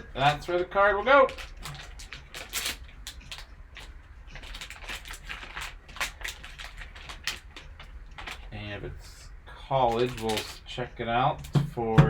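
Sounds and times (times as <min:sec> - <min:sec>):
wrapper crinkling: 0:00.0 - 0:08.6, 0:09.8 - 0:10.7.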